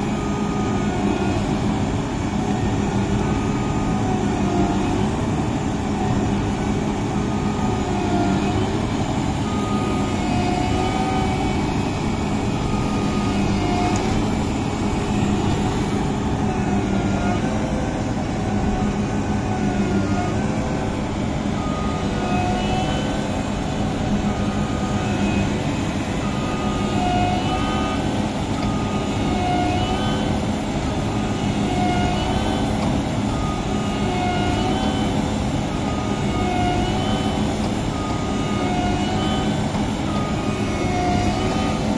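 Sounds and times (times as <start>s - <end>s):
combine harvester engine drone: 0.0s - 41.9s
high-pitched squeals: 9.4s - 17.8s, 18.4s - 30.5s.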